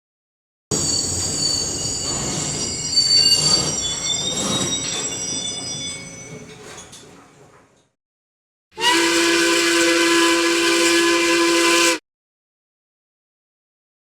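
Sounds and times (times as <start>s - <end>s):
train wheels squealing: 0.7s - 7.1s.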